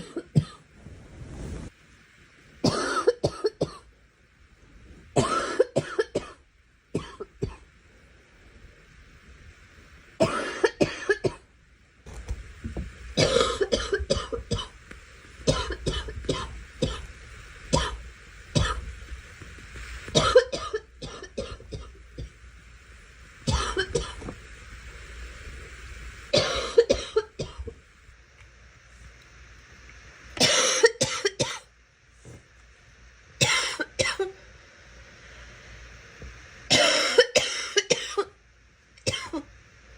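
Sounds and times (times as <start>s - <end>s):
woman coughing: 5.2s - 6.4s, 10.2s - 11.4s, 13.2s - 14.7s, 20.2s - 21.9s, 26.4s - 27.6s, 30.4s - 31.7s, 33.4s - 34.4s, 36.7s - 38.4s, 39.1s - 39.5s.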